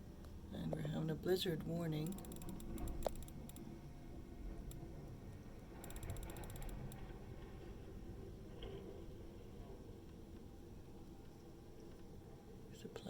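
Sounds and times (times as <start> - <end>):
fast mechanical ratchet clicking: 2.0 - 3.7, 5.8 - 7.0.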